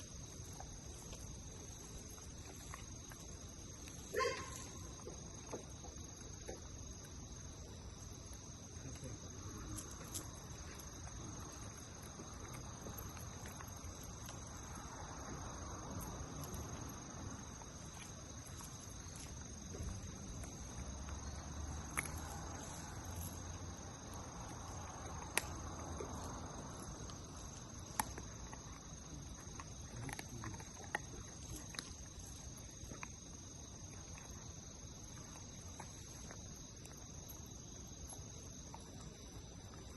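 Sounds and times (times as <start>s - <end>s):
crickets and insects chorus: 0.0s - 39.9s.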